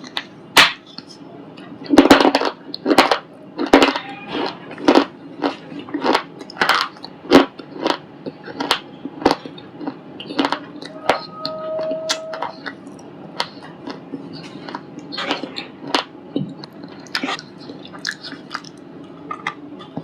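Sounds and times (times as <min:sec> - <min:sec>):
stone being chewed crunching: 0:03.6 - 0:10.6.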